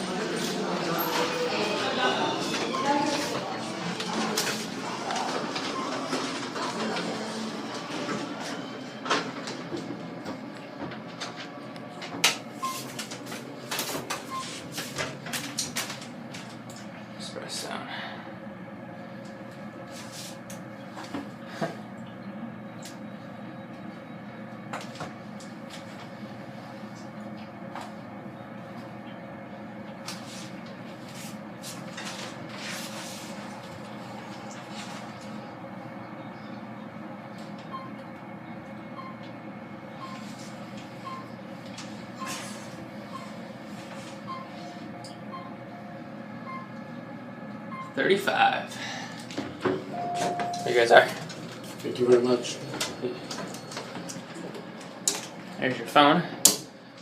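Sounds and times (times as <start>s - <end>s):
elevator doors sliding: 0.0s - 16.6s
elevator car running hum: 0.0s - 57.0s
short high beeps: 50.0s - 50.7s.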